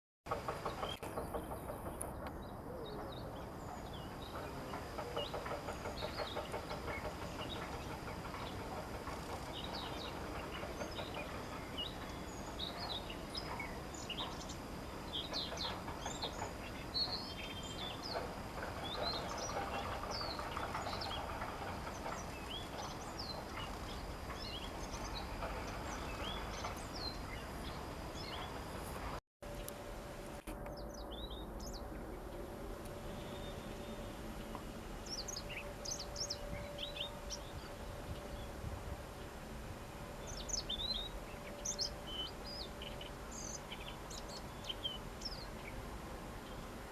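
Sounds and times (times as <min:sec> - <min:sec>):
birds chirping and whistling: 0:18.8 - 0:28.6, 0:30.7 - 0:32.0, 0:35.1 - 0:38.5, 0:40.2 - 0:45.8.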